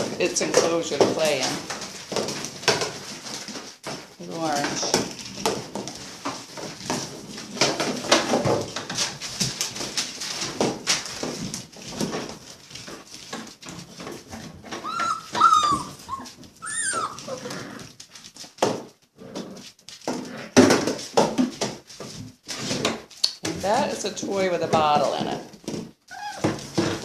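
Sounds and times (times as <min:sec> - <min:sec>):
puppies scuffling with toys: 0:00.0 - 0:27.0
high puppy whimpers: 0:14.7 - 0:17.7, 0:26.1 - 0:26.6.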